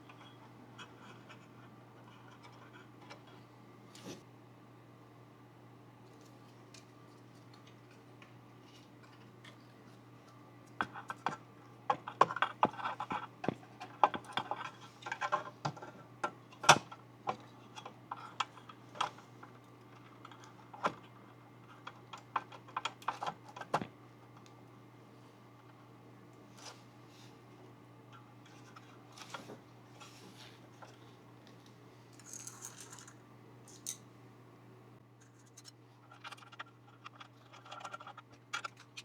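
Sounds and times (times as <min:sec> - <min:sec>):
faint steady hum: 0:00.0 - 0:39.0
computer parts clicking and clattering: 0:35.2 - 0:39.0.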